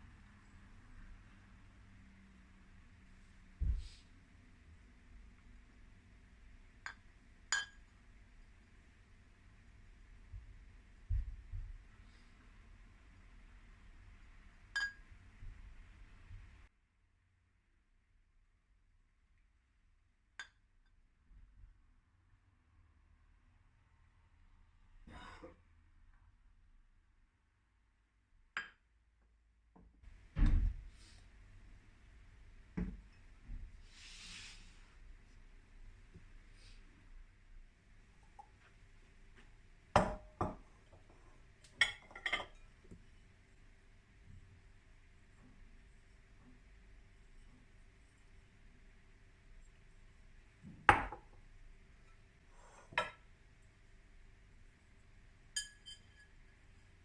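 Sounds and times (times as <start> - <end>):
kitchenware clatter: 41.8 - 42.7
kitchenware knock: 50.9 - 51.3
bright ringing clink: 55.6 - 56.3.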